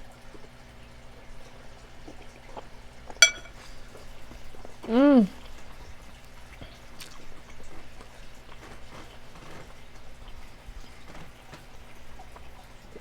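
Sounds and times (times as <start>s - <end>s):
person chewing food: 6.2s - 10.0s
wet mouth clicks and smacks: 7.0s - 7.2s.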